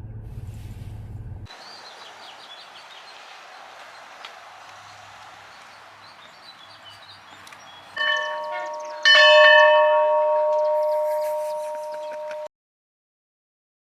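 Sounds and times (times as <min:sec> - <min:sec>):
bell ringing: 0:08.0 - 0:12.5.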